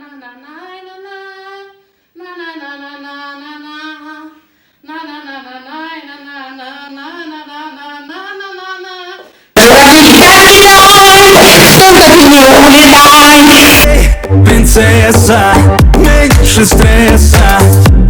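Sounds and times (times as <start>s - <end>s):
woman singing unaccompanied: 0.0s - 9.2s.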